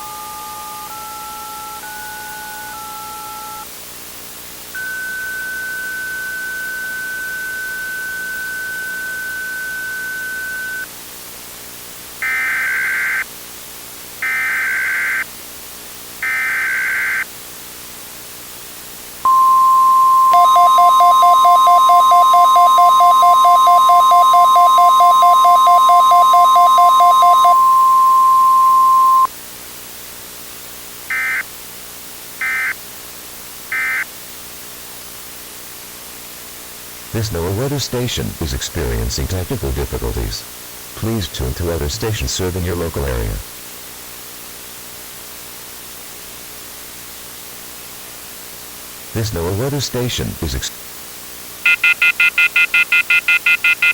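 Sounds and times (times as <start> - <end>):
screechy data tone bursts: 4.8 - 10.9, 20.1 - 29.3, 51.6 - 53.9
steady high tone: 19.3 - 29.3
warning alarm tone: 19.3 - 29.3.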